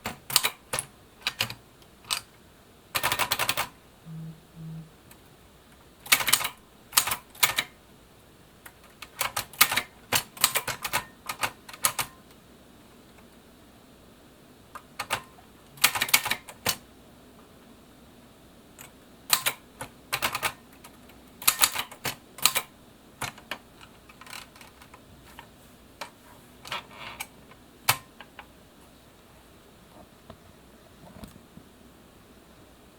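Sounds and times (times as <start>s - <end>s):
typewriter keys clacking: 3.0s - 3.7s, 6.1s - 7.7s, 9.1s - 12.2s.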